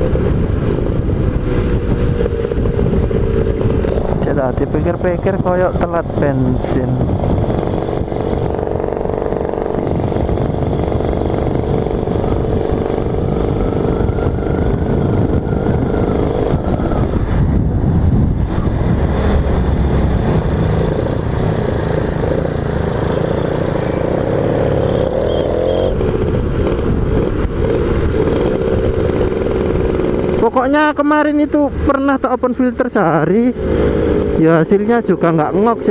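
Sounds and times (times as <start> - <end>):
two-stroke motorcycle engine: 0.0 - 35.9
wind rumble on microphone: 0.0 - 35.9.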